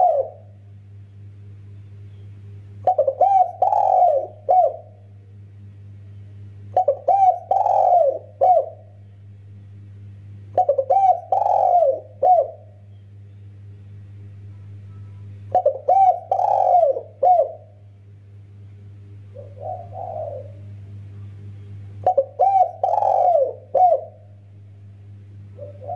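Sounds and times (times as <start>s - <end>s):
dove cooing: 0.0s - 0.6s, 2.8s - 5.1s, 6.7s - 9.0s, 10.5s - 12.8s, 15.5s - 17.8s, 19.3s - 20.8s, 22.0s - 24.4s, 25.5s - 25.9s.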